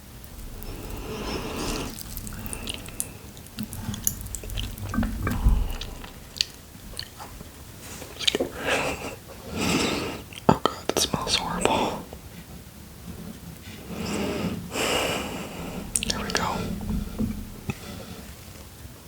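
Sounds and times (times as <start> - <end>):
person chewing noodles: 0.0 - 7.3
wet mouth clicks and smacks: 0.1 - 7.3, 15.8 - 17.8.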